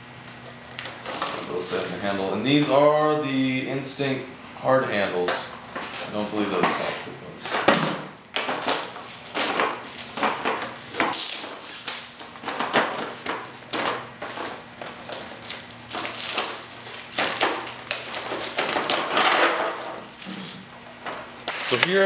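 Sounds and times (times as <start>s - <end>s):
packaging rustling: 0.3s - 2.4s, 8.3s - 21.5s.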